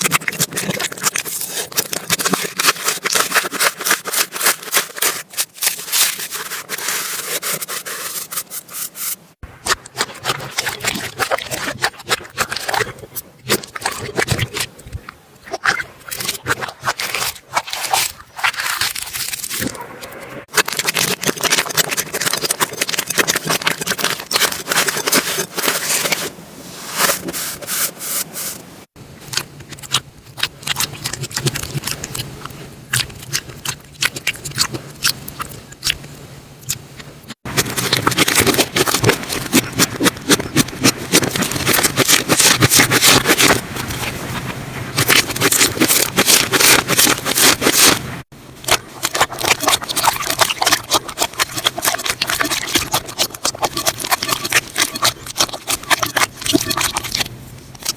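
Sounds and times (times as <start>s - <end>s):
slime crackling and popping: 20.5s - 26.3s, 37.4s - 57.9s.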